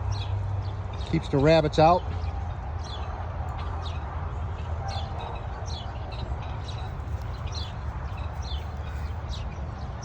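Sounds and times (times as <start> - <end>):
bird chirping: 4.9 - 9.6.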